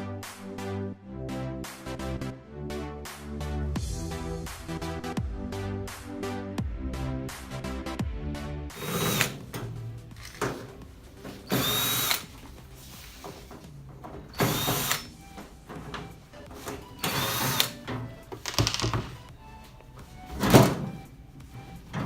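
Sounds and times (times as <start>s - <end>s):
power drill whining: 8.7s - 13.4s, 14.3s - 15.4s, 16.6s - 18.8s.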